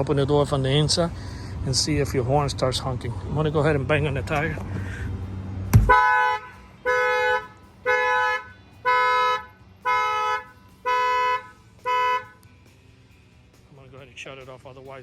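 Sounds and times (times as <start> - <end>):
car horn honking: 5.7 - 12.4.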